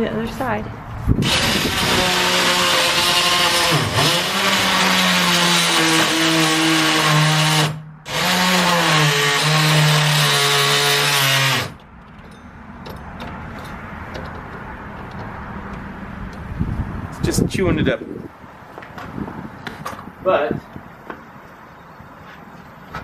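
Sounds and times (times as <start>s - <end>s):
power saw motor whining: 1.2s - 11.8s
handling noise and clicks: 11.8s - 16.5s.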